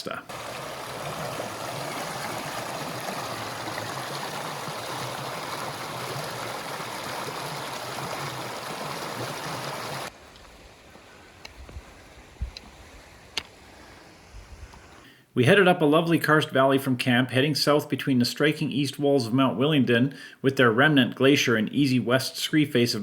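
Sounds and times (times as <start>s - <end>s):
mountain stream rushing: 0.3s - 15.0s.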